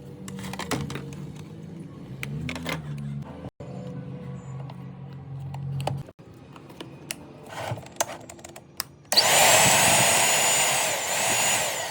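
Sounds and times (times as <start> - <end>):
mixer grinder motor whining: 9.1 - 11.9.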